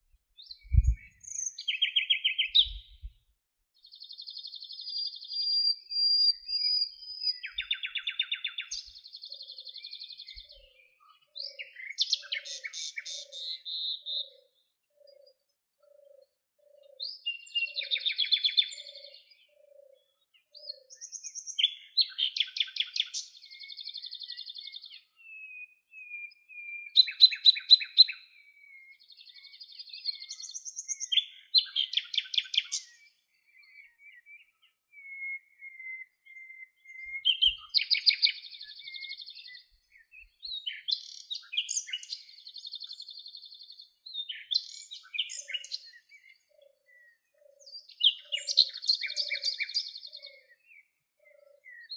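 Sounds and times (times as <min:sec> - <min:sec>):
songbirds singing: 0:00.0 - 0:51.9
faint low repeating note: 0:00.7 - 0:01.1.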